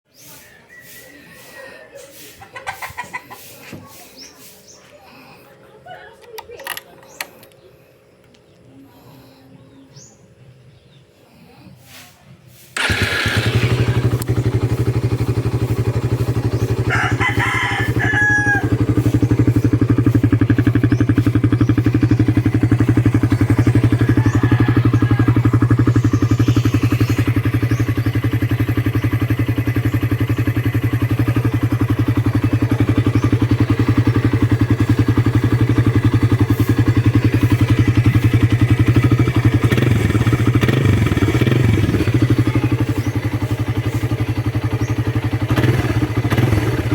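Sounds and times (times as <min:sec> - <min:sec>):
motorcycle engine idling: 0:12.8 - 0:46.9
rooster crowing: 0:16.4 - 0:19.2, 0:23.6 - 0:27.0.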